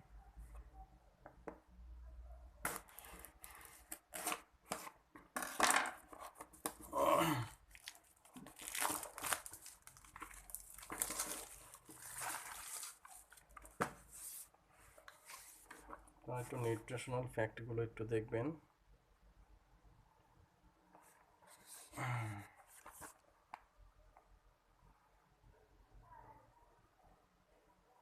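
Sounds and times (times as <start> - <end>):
packaging tearing and crinkling: 7.7 - 13.4.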